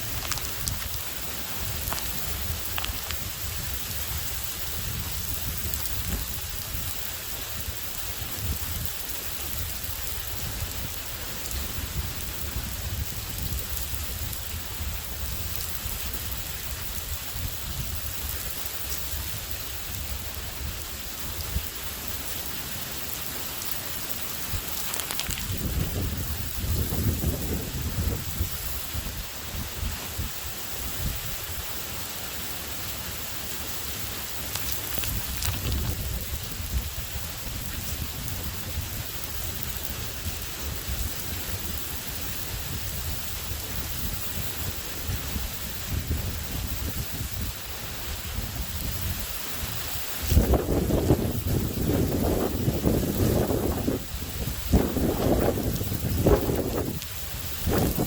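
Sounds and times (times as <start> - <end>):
steady rain: 0.0 - 58.0
thunder rumble: 50.2 - 58.0.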